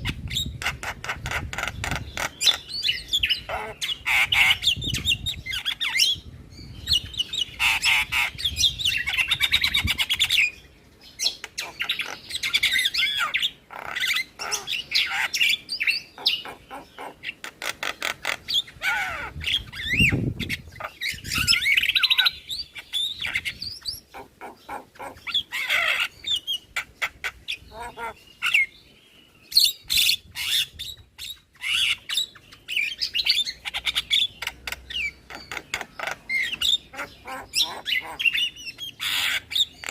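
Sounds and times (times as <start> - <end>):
mynas chattering and squawking: 0.0 - 6.0, 11.2 - 28.7, 29.9 - 39.9.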